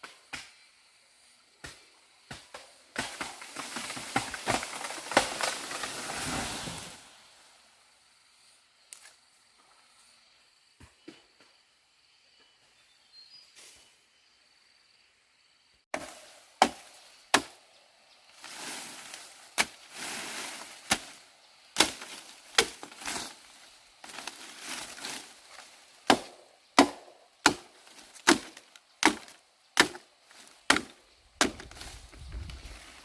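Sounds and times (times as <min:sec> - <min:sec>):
chopping strikes on wood: 0:15.9 - 0:17.6, 0:21.8 - 0:23.0, 0:26.0 - 0:30.0, 0:30.7 - 0:31.8
rustling and scraping: 0:21.8 - 0:25.9.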